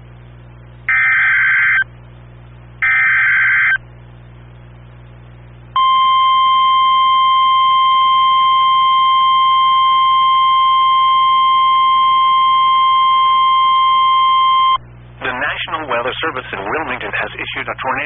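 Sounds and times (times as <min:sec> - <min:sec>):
steady warning alarm tone: 0:00.9 - 0:01.9, 0:02.8 - 0:03.8, 0:05.8 - 0:14.8.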